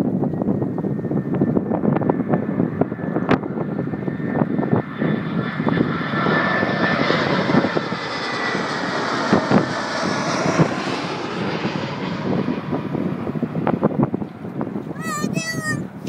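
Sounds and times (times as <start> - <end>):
airliner passing overhead: 0.0 - 16.0
wind buffeting microphone: 0.0 - 16.0.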